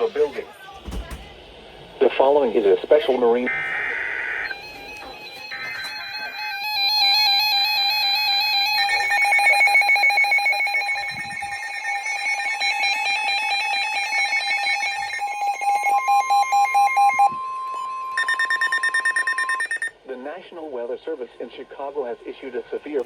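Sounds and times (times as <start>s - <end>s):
steady high tone: 2.0s - 19.9s
pulsing radio alarm: 2.8s - 20.0s
electronic beeping and warbling tones: 3.4s - 19.9s.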